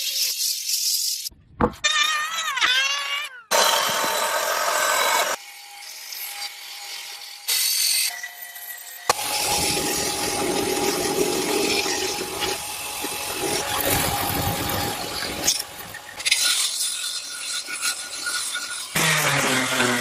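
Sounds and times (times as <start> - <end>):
power tool working: 3.5 - 5.5, 18.6 - 20.0.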